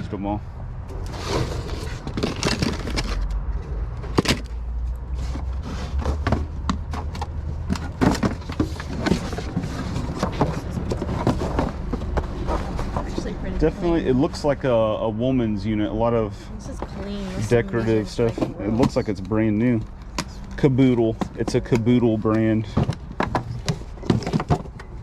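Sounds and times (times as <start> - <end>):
plastic containers knocking: 6.1 - 13.3.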